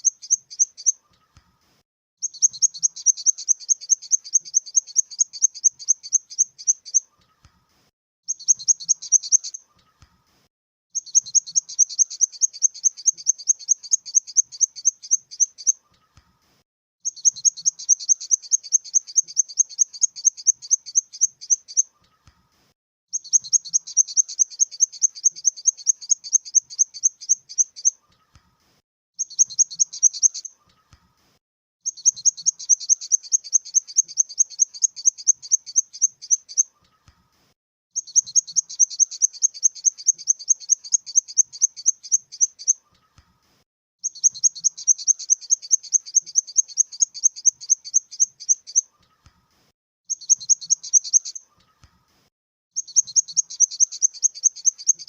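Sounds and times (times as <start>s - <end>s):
grasshopper chirping: 2.2s - 7.0s, 11.0s - 15.7s, 17.1s - 21.8s, 23.2s - 27.9s, 31.9s - 36.6s, 38.0s - 42.7s, 44.0s - 48.8s, 52.8s - 55.0s.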